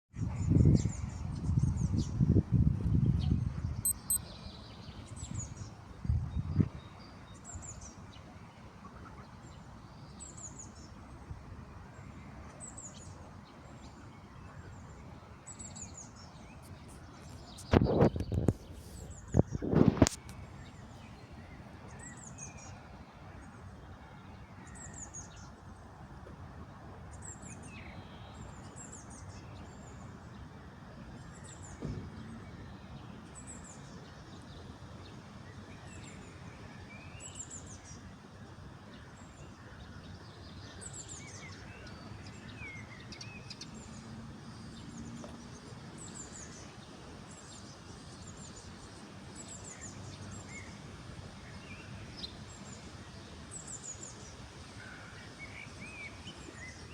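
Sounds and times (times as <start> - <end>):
small birds chirping: 3.8 - 4.2.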